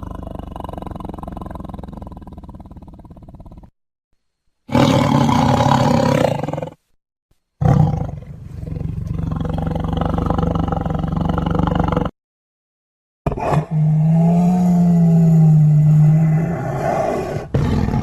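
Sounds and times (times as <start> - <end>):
dinosaur roars: 13.3 - 18.0.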